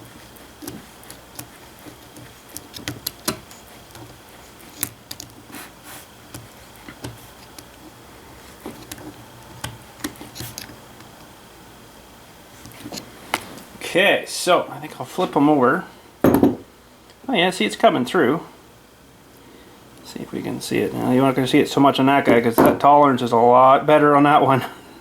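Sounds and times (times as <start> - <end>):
sharp knocks: 16.2 - 16.7.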